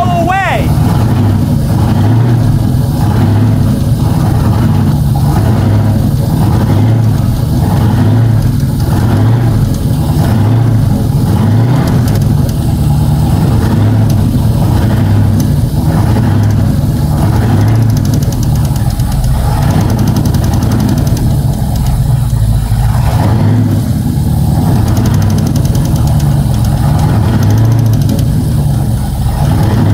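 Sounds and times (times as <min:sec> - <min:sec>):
engine running steadily: 0:00.0 - 0:29.9.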